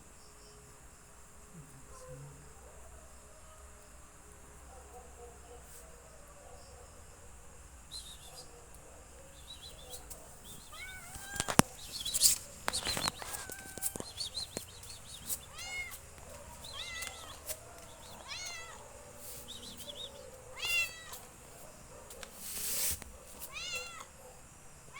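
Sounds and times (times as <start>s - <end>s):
cat meowing: 10.6s - 21.4s, 23.4s - 24.1s.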